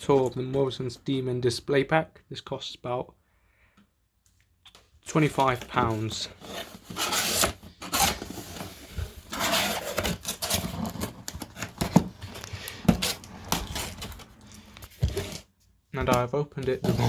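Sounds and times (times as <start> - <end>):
cardboard scraping and rustling: 5.2 - 17.0.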